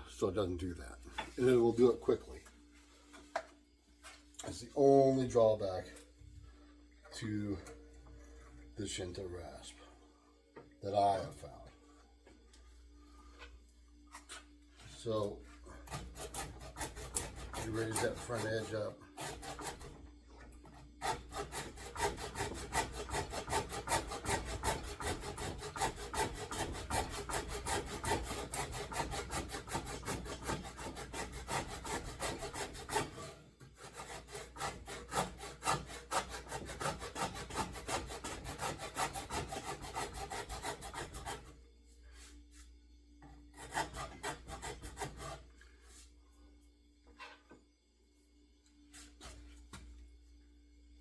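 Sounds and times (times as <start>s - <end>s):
rasp on wooden handle: 15.9s - 20.0s, 21.0s - 41.5s, 43.6s - 45.4s.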